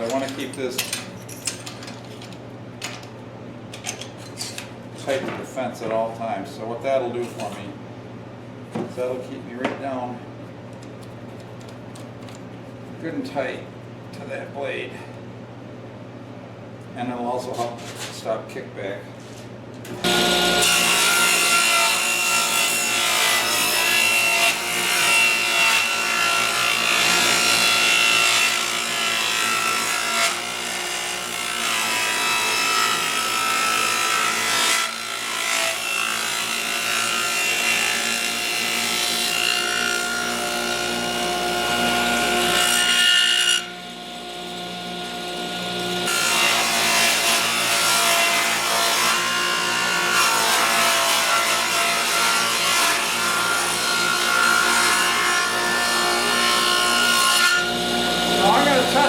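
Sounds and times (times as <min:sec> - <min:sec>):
table saw cutting wood: 0:20.0 - 0:59.0.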